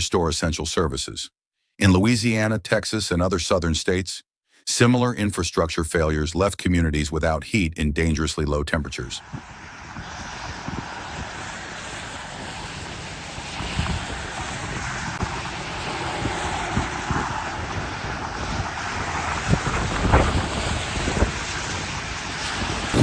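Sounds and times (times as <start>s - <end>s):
wind blowing across microphone: 9.2s - 23.0s.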